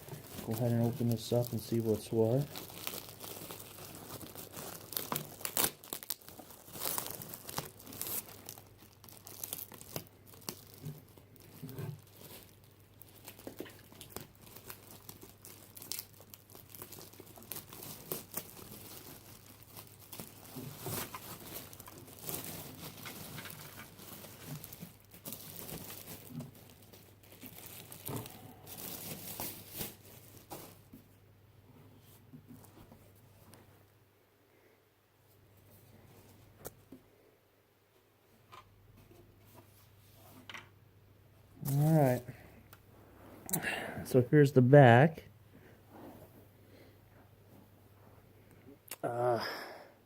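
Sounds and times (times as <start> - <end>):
packaging crinkling and tearing: 0.0 - 30.9, 41.6 - 42.2.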